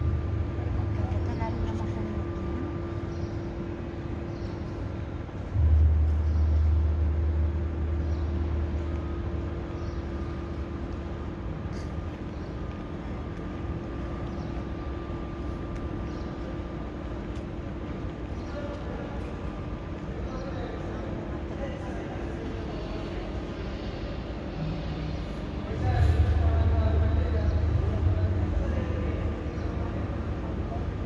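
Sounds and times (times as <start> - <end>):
deep rumble: 0.0 - 4.2, 5.0 - 11.6, 23.7 - 31.0
steady low hum: 0.0 - 31.0.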